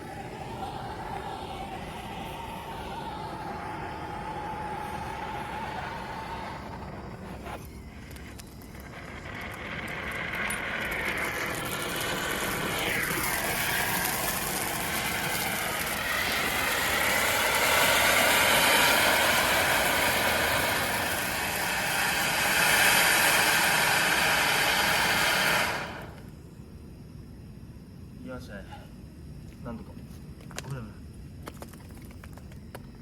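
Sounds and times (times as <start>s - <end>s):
falling whistle: 0.0s - 26.3s
fireworks hissing: 0.0s - 26.5s.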